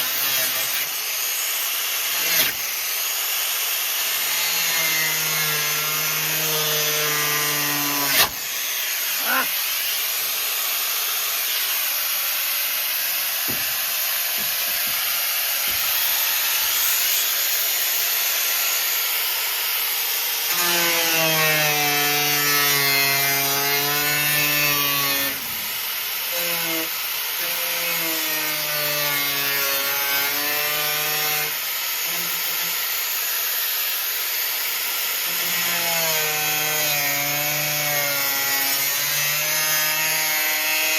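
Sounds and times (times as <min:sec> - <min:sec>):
angle grinder motor whine: 0:00.0 - 0:40.9.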